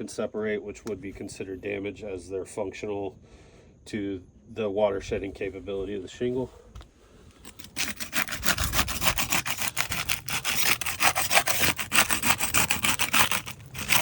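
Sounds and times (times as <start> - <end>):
putty knife scraping shingles: 7.4 - 14.0.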